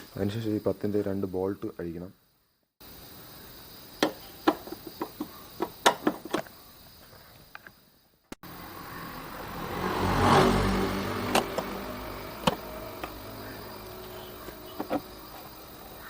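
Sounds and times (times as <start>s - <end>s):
motor vehicle passing: 8.4s - 15.9s.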